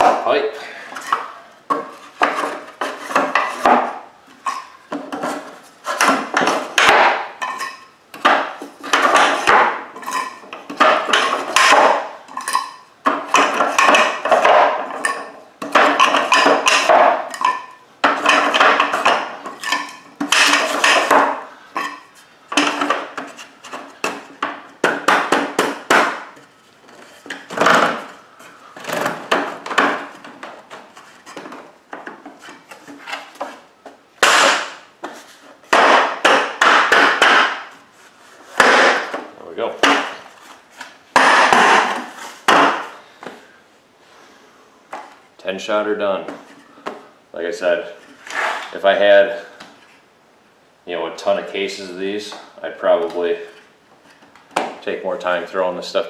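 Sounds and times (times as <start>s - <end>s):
mortar tubes clattering against wood: 0.0s - 28.2s, 28.8s - 33.6s, 34.2s - 37.7s, 38.6s - 40.3s.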